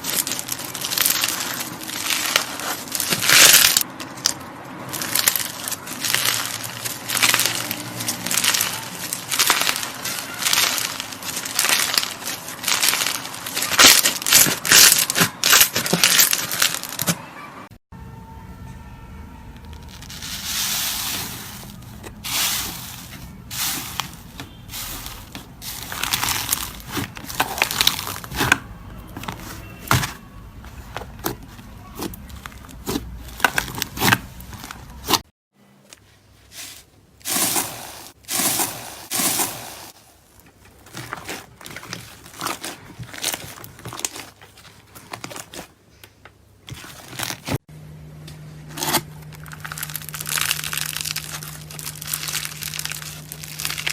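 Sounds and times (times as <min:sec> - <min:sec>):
slime squelching and popping: 0:49.4 - 0:53.9.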